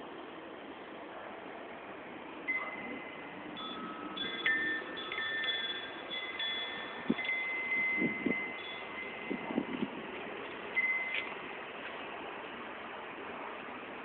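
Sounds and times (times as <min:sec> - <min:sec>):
wind chimes ringing: 0:02.5 - 0:09.7, 0:10.7 - 0:11.4.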